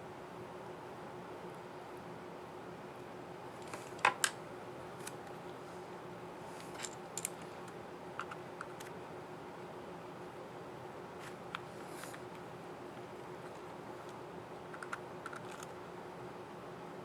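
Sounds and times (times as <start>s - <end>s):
laptop keyboard plastic clicks: 14.8s - 15.7s.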